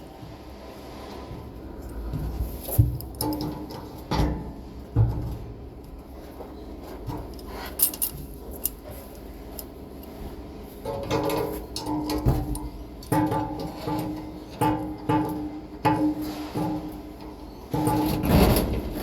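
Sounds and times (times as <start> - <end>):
tools and parts clattering: 2.6 - 4.5, 7.1 - 10.2, 10.8 - 19.0.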